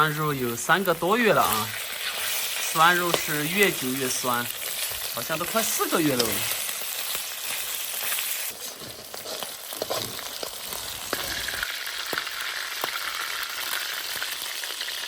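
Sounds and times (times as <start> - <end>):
meat sizzling in a pan: 0.0 - 15.0.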